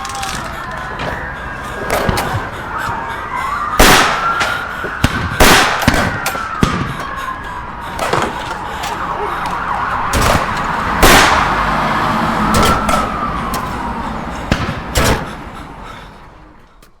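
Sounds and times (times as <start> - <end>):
rumbling chaos: 0.0 - 17.0
wailing siren: 0.0 - 17.0
gunshots: 3.8 - 7.2, 10.0 - 11.8, 12.5 - 13.1, 14.5 - 15.3.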